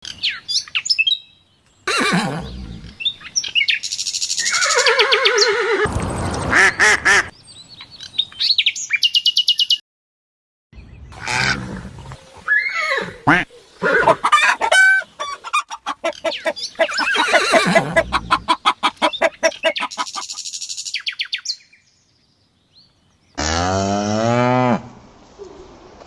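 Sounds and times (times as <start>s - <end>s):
chickens clucking: 14.0s - 20.4s.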